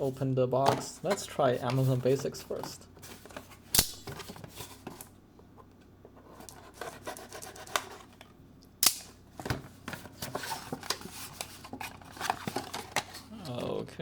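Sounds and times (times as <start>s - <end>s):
packaging rustling and scraping: 0.6s - 5.2s, 6.1s - 8.3s, 9.4s - 13.7s
sharp snap: 3.7s - 4.0s, 8.8s - 9.1s.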